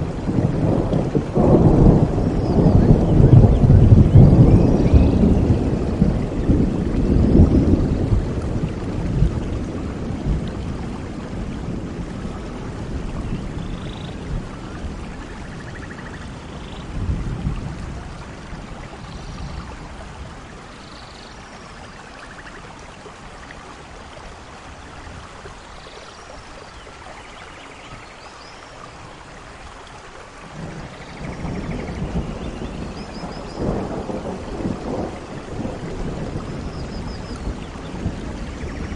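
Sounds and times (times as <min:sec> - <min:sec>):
rolling thunder: 0:00.0 - 0:20.7, 0:30.4 - 0:38.9
rain falling steadily: 0:00.0 - 0:38.9.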